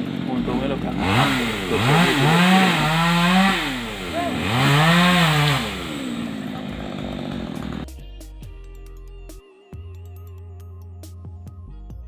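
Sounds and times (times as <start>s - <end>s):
chainsaw engine revving: 0.0s - 8.0s.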